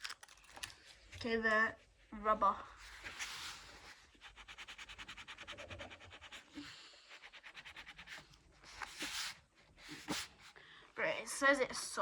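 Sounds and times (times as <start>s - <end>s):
eraser rubbing on paper: 2.9s - 10.5s.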